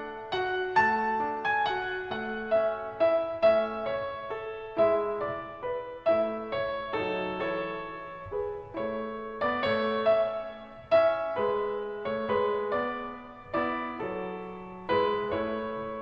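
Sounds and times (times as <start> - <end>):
slow gentle piano music: 0.0 - 16.0.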